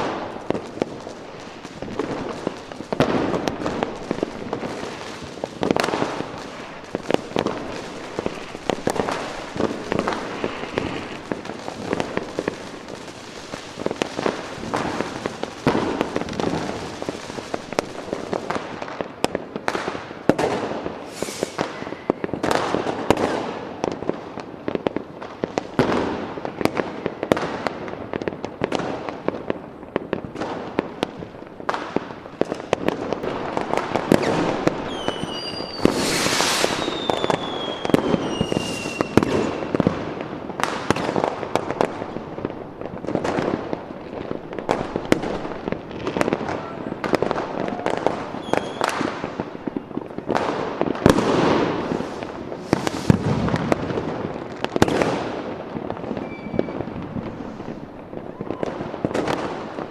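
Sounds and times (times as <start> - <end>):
fireworks bangs and crackling: 0.0 - 59.9
falling firework whistle: 5.8 - 12.2, 21.0 - 23.6, 34.1 - 39.9, 46.1 - 49.9, 51.1 - 53.7, 56.1 - 57.7, 58.3 - 58.8.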